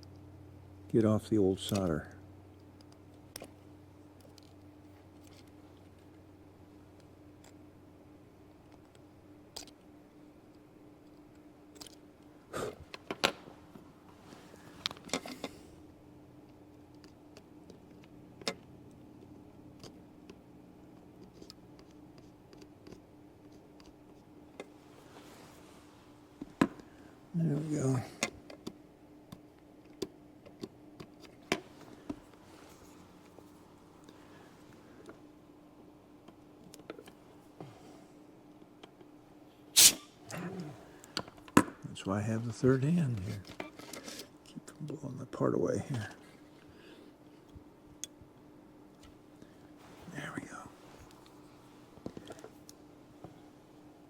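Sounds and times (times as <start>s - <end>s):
faint steady hum: 0.0s - 54.0s
sharp puff of air: 39.8s - 40.2s
low voiced sound: 40.3s - 41.0s.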